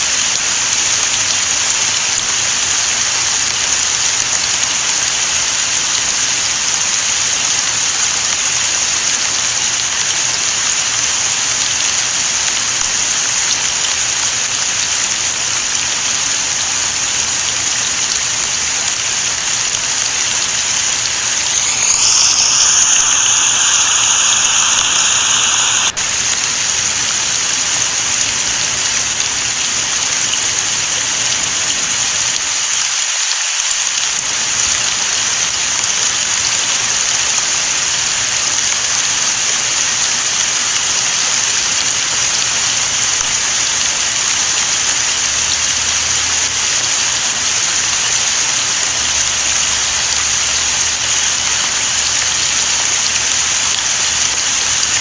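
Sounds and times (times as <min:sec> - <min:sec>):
rain falling: 0:00.0 - 0:55.0
stream running water: 0:00.0 - 0:55.0
loud hiss with whistling tone: 0:20.1 - 0:26.5.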